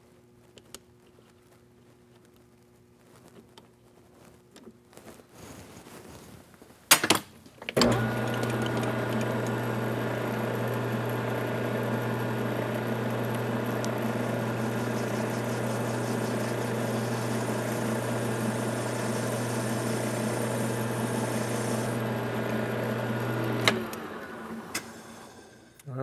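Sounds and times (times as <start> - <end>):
metal lathe motor humming: 7.8 - 25.8.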